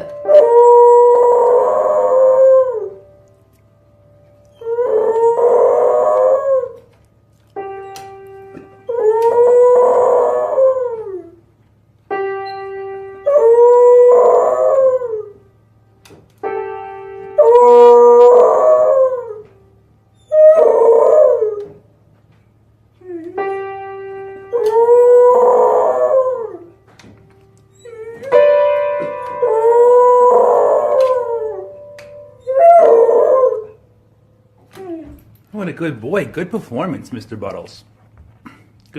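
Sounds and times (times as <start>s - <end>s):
dog howling: 0.0s - 3.1s, 4.5s - 6.9s, 8.8s - 11.4s, 13.2s - 15.4s, 17.4s - 19.5s, 20.2s - 21.8s, 24.3s - 26.8s, 27.7s - 33.8s, 34.6s - 35.4s.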